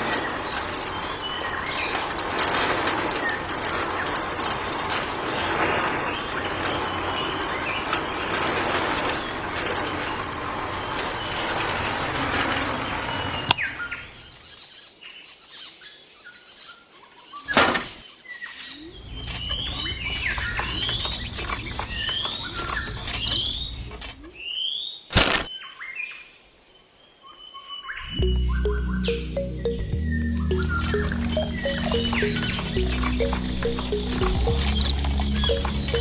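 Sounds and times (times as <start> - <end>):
small birds chirping: 16.5 - 25.8, 27.2 - 36.0.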